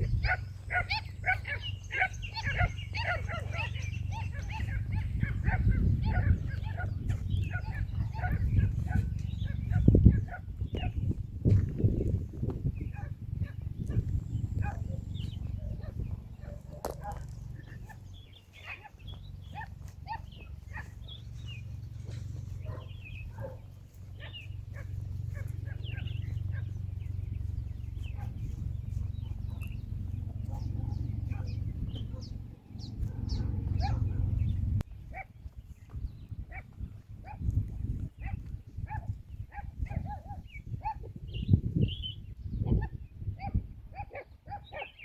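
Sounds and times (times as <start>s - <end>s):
steady low rumble: 0.0s - 43.4s
small birds chirping: 0.0s - 45.0s.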